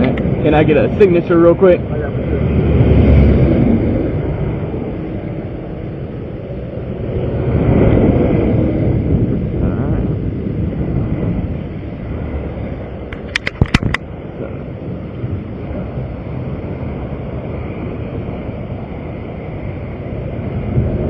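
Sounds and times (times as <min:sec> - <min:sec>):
highway traffic rumble: 0:00.0 - 0:21.0
wind on microphone: 0:00.0 - 0:21.0
sharp clicks: 0:13.1 - 0:14.0.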